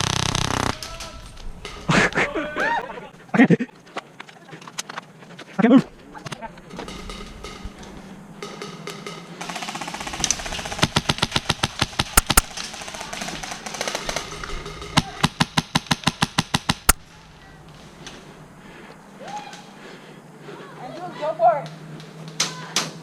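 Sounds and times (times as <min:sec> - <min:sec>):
airsoft guns firing full auto: 0:00.0 - 0:01.2, 0:09.0 - 0:17.0.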